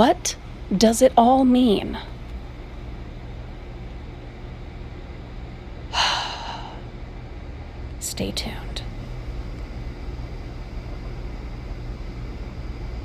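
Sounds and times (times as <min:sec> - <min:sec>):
steady low hum: 0:00.0 - 0:13.0
breathy exhale: 0:05.9 - 0:06.9.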